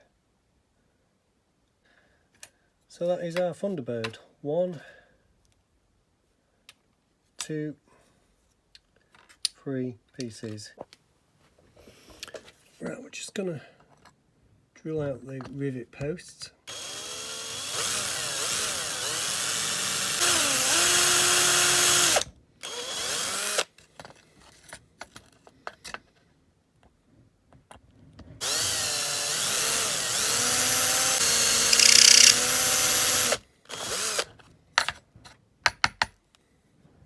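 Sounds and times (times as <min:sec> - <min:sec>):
electric drill drilling metal: 0:16.7 - 0:23.6, 0:28.4 - 0:34.3.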